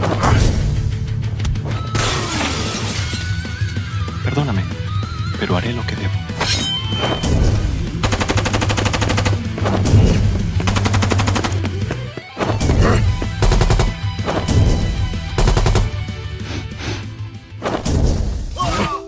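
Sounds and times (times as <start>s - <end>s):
dramatic background music: 0.0s - 19.0s
machine-gun fire: 8.0s - 9.5s, 10.6s - 11.6s, 13.4s - 14.1s, 15.4s - 16.0s.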